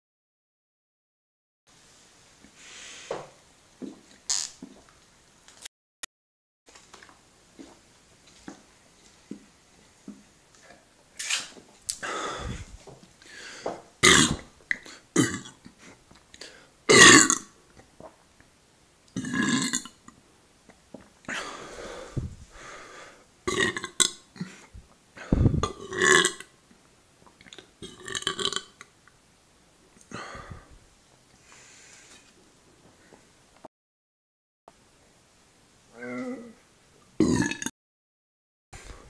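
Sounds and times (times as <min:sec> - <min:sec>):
person belching: 0:14.0 - 0:14.5, 0:15.2 - 0:15.6, 0:16.9 - 0:17.5, 0:19.2 - 0:20.0, 0:23.5 - 0:24.2, 0:25.5 - 0:26.5, 0:27.8 - 0:28.8, 0:37.2 - 0:37.7.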